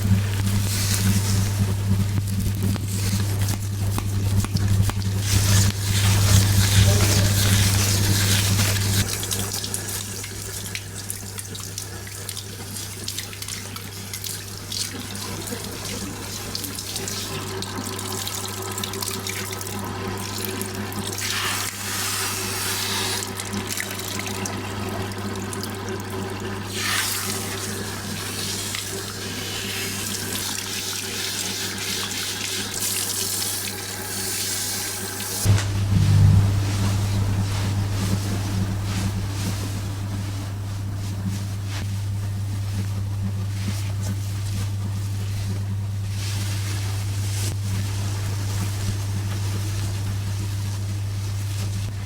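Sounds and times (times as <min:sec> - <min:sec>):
water spray rinsing hair: 0:00.0 - 0:24.4, 0:26.6 - 0:45.5
steady low hum: 0:35.4 - 0:52.0.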